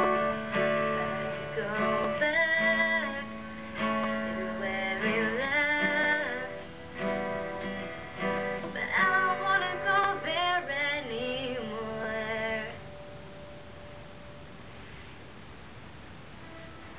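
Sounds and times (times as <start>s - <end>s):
woman singing: 0.0s - 13.0s
strummed acoustic guitar: 0.0s - 14.6s, 16.4s - 16.9s
faint steady hiss: 0.0s - 16.9s.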